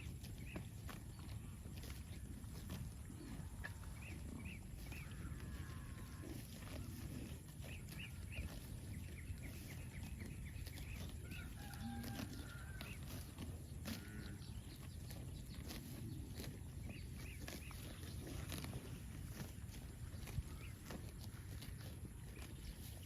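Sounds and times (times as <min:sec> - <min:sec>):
low animal call: 0:11.2 - 0:14.7.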